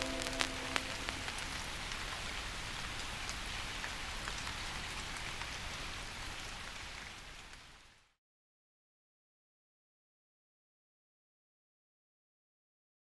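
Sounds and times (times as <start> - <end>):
steady rain falling: 0.0 - 8.2.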